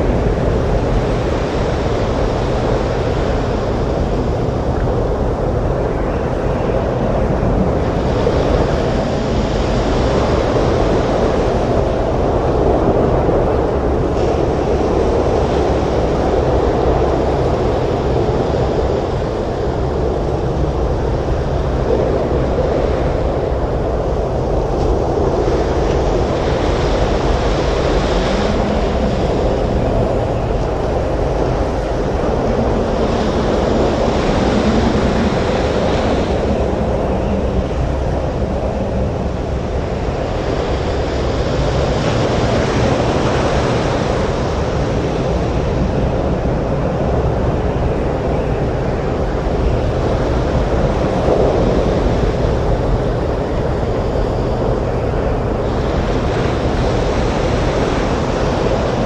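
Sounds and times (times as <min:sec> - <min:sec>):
breaking waves: 0:00.0 - 0:59.0
hiss of surf: 0:00.0 - 0:59.0
strong wind: 0:00.0 - 0:59.0.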